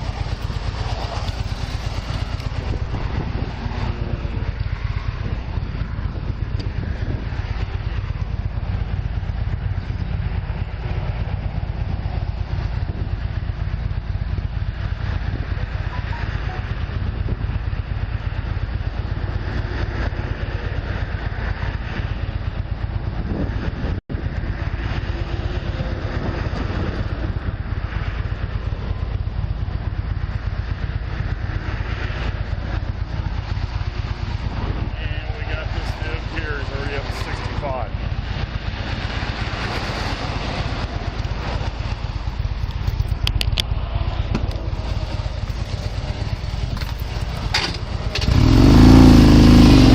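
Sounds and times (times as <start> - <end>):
motorcycle engine running: 0.0 - 49.9.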